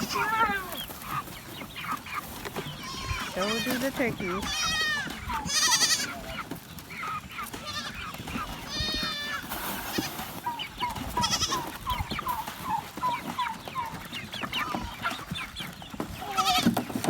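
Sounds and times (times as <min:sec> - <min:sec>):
goats bleating: 0:00.0 - 0:00.9, 0:02.7 - 0:06.5, 0:07.4 - 0:10.3, 0:11.1 - 0:11.9, 0:16.2 - 0:16.8
chickens clucking: 0:00.0 - 0:17.0.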